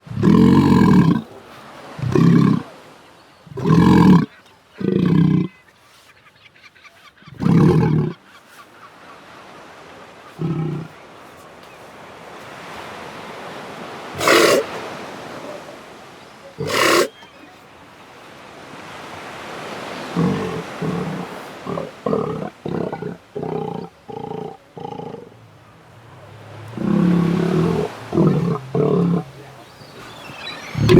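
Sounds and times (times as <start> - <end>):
sea lion roaring: 0.0 - 1.4, 2.0 - 2.8, 3.5 - 5.6, 7.3 - 8.3, 10.3 - 11.0, 14.1 - 15.8, 16.6 - 17.1, 19.6 - 30.9
background hiss: 0.0 - 30.9.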